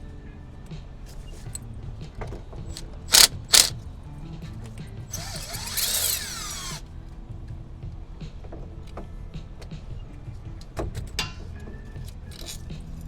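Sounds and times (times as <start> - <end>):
cordless power tool whining: 3.1 - 3.7, 5.1 - 6.8.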